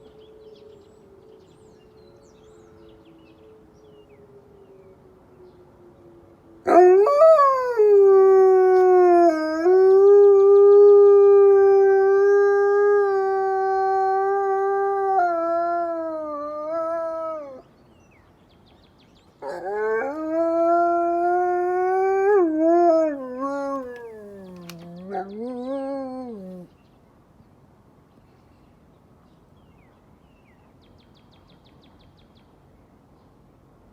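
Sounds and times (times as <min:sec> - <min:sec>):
wolf howling: 0:06.7 - 0:17.6, 0:19.4 - 0:26.7.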